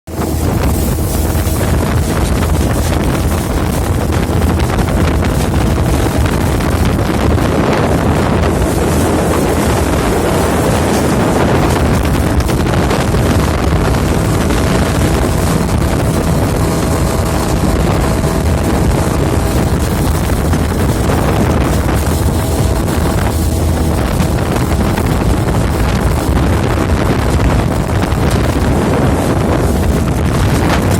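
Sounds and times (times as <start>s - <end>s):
boat motor running: 0.1s - 30.9s
wind buffeting microphone: 0.1s - 30.9s.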